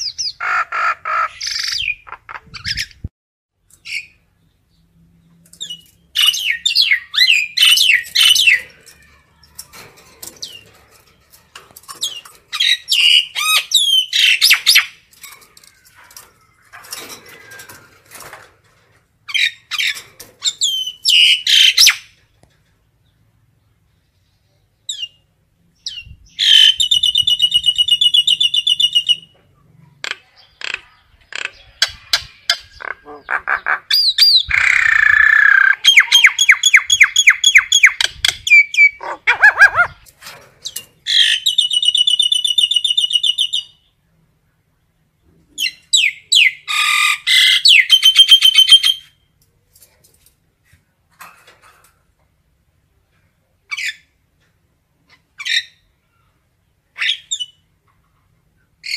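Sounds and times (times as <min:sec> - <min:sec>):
myna calling: 0:00.0 - 0:02.8, 0:30.0 - 0:40.1.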